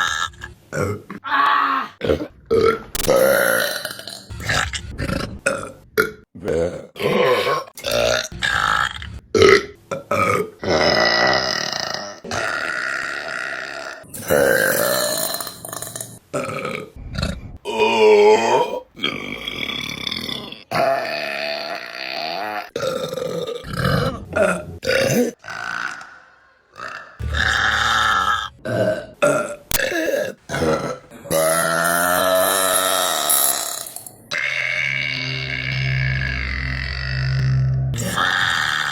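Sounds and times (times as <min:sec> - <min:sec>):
women burping: 0:28.9 - 0:34.6.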